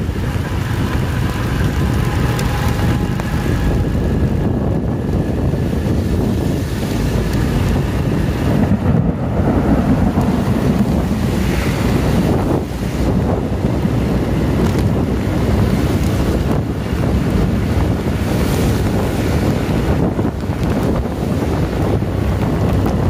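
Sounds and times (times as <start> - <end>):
heavy rain: 0.0 - 23.0
wind buffeting microphone: 0.0 - 23.0.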